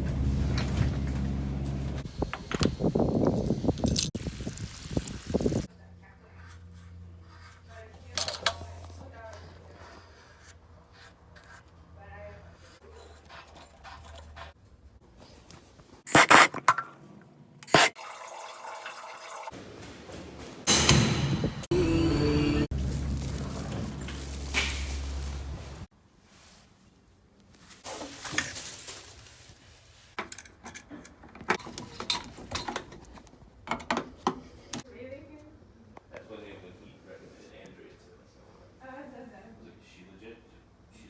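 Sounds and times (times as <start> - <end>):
rustle: 3.9 - 5.7, 22.8 - 26.8, 27.5 - 30.2.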